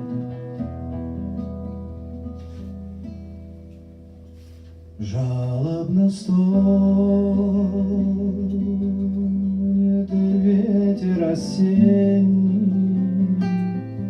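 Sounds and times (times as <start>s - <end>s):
acoustic guitar: 0.0s - 14.0s
person singing: 5.0s - 14.0s.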